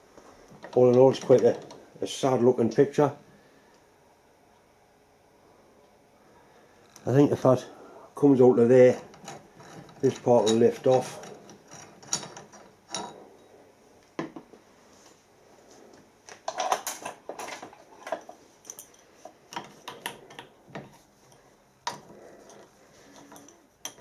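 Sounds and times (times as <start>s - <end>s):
metal pipe cutter parts clinking: 8.9s - 13.2s, 21.9s - 24.0s.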